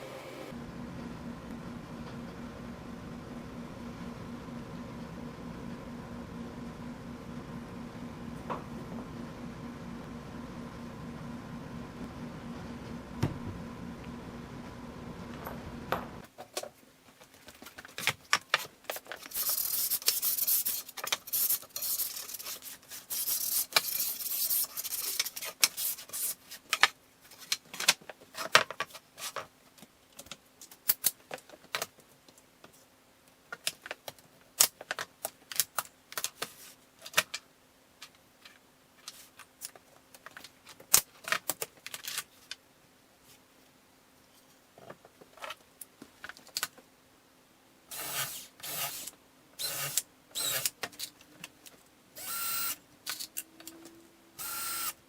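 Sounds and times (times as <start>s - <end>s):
machine hum: 0.0s - 16.2s, 52.2s - 52.8s, 54.4s - 55.0s.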